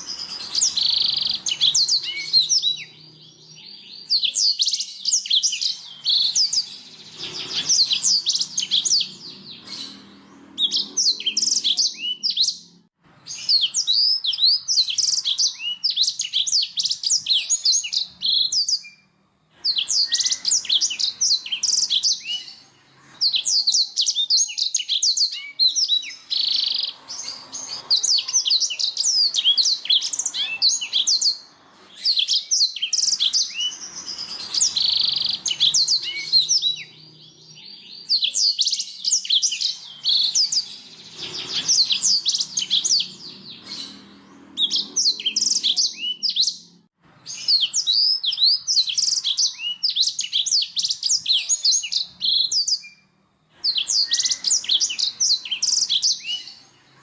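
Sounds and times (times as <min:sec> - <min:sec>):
canary singing: 0:00.0 - 0:57.0.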